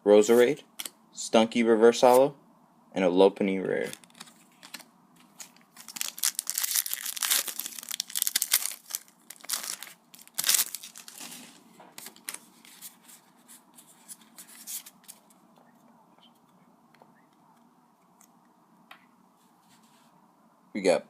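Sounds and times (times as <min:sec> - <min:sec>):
foil wrapper tearing and crinkling: 0:03.9 - 0:12.4.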